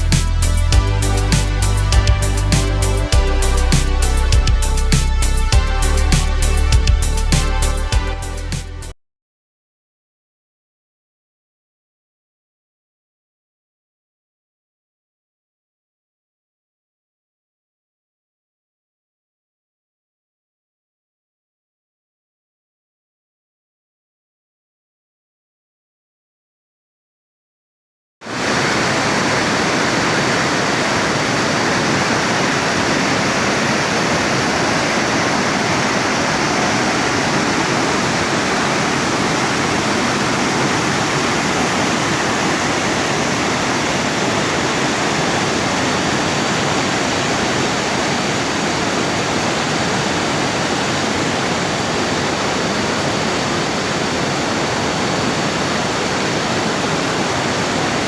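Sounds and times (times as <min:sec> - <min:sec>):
river water rushing: 0:28.3 - 0:58.0.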